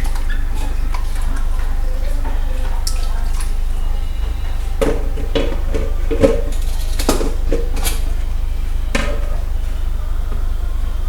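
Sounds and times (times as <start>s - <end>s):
dishes clinking together: 0.0s - 8.4s.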